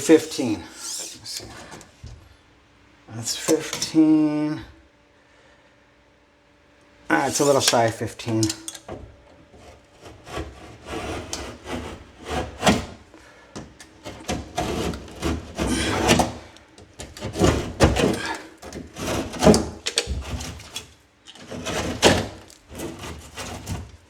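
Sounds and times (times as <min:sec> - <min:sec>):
scraping on drywall: 0:09.5 - 0:24.0
knocks of board and tools: 0:13.6 - 0:20.8.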